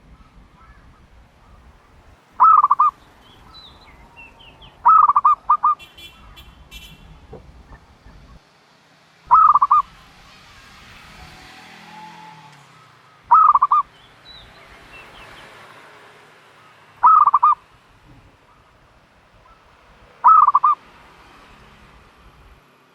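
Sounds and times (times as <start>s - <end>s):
dove calling: 0.0s - 8.4s, 9.3s - 10.3s, 12.8s - 15.5s, 17.0s - 20.8s.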